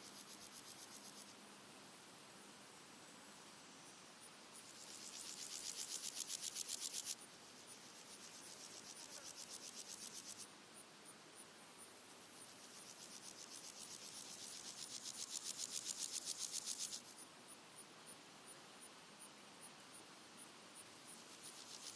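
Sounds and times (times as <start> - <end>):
grasshoppers stridulating: 0.0 - 1.4, 4.6 - 10.5, 11.8 - 17.3, 20.8 - 21.9
faint high insect ticking: 0.0 - 21.9.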